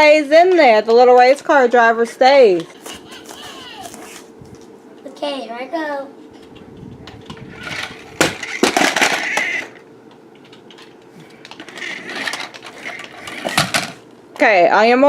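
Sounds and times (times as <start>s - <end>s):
toy car knocking objects: 7.6s - 9.8s, 11.5s - 14.0s
rattling clatter: 11.5s - 14.0s.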